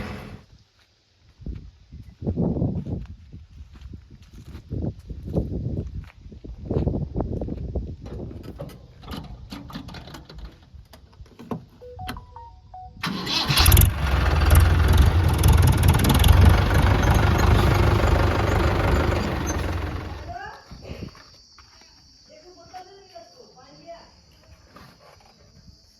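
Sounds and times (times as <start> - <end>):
heavy engine rumbling: 0.0 - 0.4, 13.0 - 20.4
short beeps: 11.8 - 13.0.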